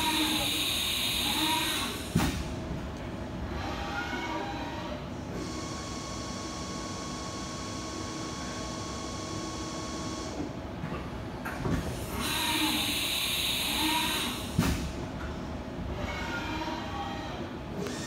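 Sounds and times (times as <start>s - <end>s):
machine whine with high tones: 0.0s - 2.1s.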